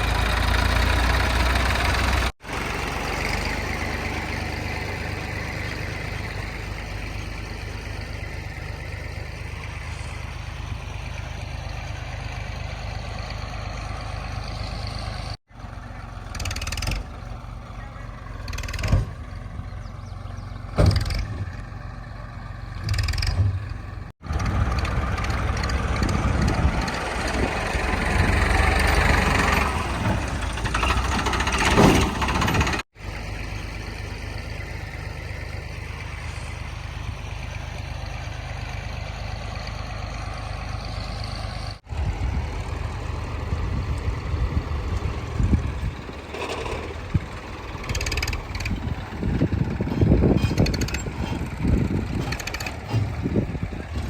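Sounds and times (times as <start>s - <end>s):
heavy machinery diesel engines: 0.0s - 54.0s
metal clanks: 20.7s - 21.6s, 22.8s - 24.0s, 49.8s - 54.0s.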